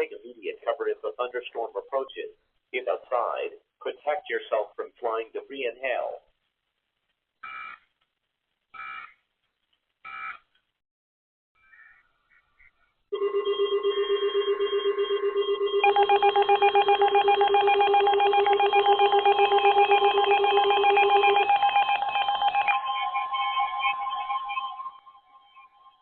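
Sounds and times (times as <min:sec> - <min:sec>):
pulsing electronic alert tones: 0:13.2 - 0:26.0.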